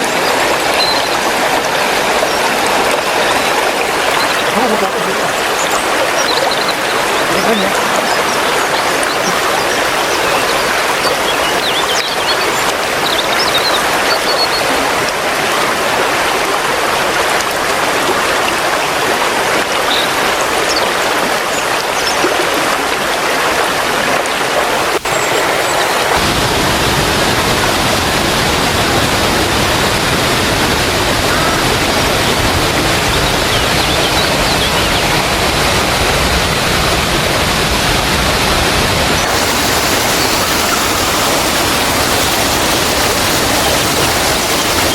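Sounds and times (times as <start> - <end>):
waterfall rushing: 0.0 - 44.9.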